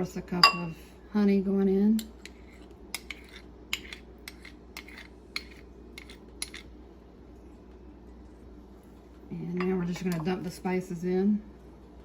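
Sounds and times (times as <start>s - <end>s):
utensils clinking against a bowl: 0.4s - 0.8s, 2.0s - 6.7s.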